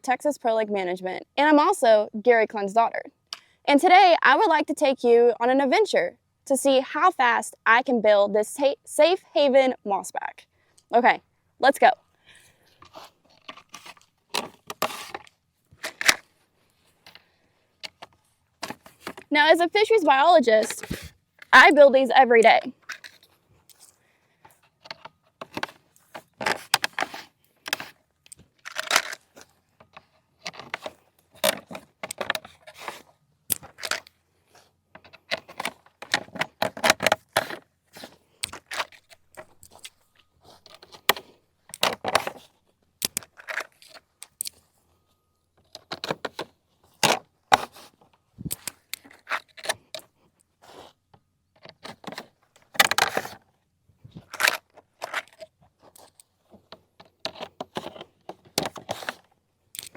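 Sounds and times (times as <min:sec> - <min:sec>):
plastic parts clattering and scraping: 0:12.6 - 0:19.3, 0:20.6 - 0:21.5, 0:22.8 - 0:59.9.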